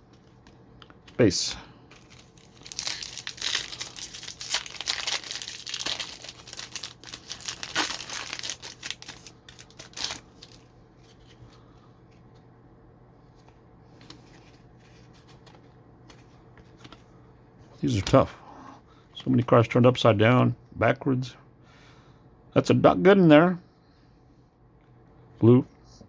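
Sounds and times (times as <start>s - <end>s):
foil wrapper tearing and crinkling: 2.0s - 10.7s.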